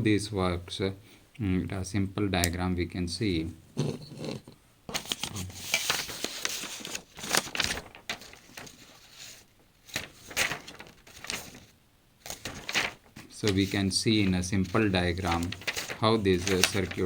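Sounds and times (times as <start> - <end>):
rustling: 4.9 - 17.0.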